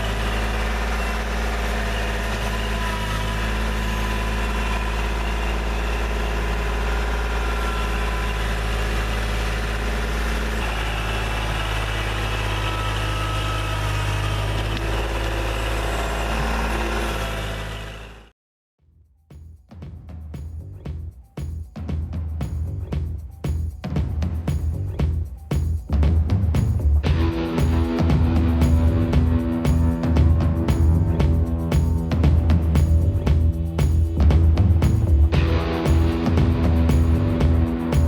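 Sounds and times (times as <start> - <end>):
diesel engine running: 0.0 - 18.3, 26.1 - 38.0.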